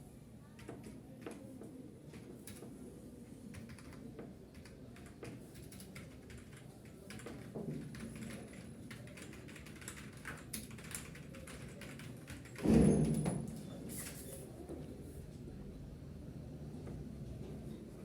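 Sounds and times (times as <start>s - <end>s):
typing on a keyboard: 0.6s - 1.5s, 2.1s - 2.7s, 3.5s - 12.6s.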